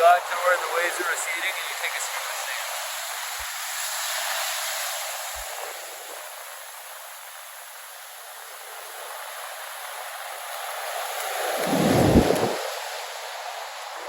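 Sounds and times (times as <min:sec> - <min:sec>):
surf washing over sand: 0:00.0 - 0:14.0.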